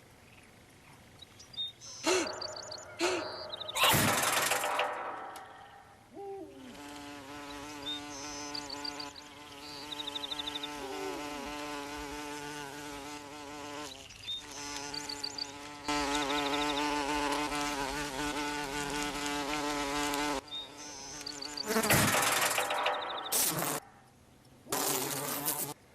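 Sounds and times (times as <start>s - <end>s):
high twittering trills: 1.6s - 6.4s, 7.4s - 10.8s, 20.5s - 24.0s
insect wing buzz drone: 6.6s - 23.8s, 24.7s - 25.8s.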